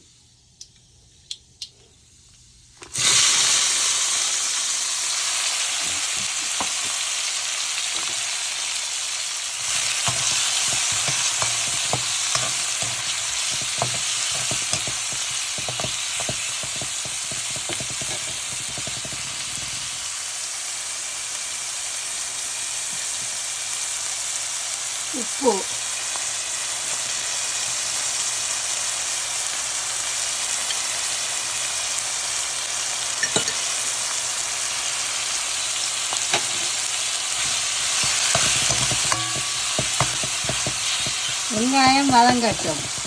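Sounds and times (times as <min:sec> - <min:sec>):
food sizzling in hot oil: 0:02.0 - 0:43.0
spoon clicking against pan: 0:09.6 - 0:19.2, 0:33.0 - 0:33.7.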